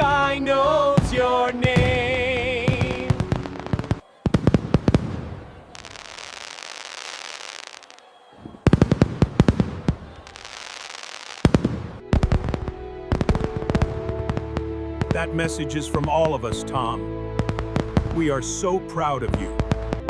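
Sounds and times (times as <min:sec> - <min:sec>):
music: 0:00.0 - 0:05.0, 0:11.4 - 0:20.0
fireworks banging: 0:00.7 - 0:16.6, 0:17.3 - 0:20.0
fireworks crackling and fizzing: 0:01.0 - 0:16.6.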